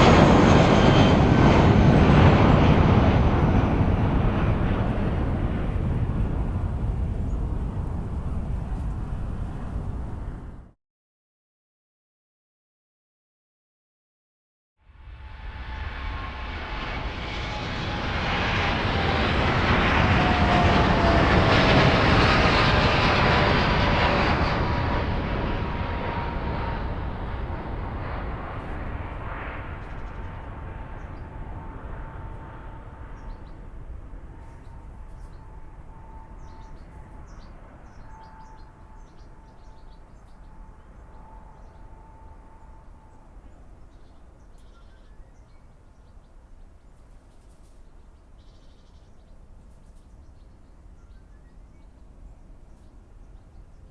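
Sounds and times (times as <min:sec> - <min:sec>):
falling engine whine: 0:00.0 - 0:10.7, 0:15.1 - 0:37.2
jet engines at takeoff power: 0:00.0 - 0:10.8, 0:15.0 - 0:45.6.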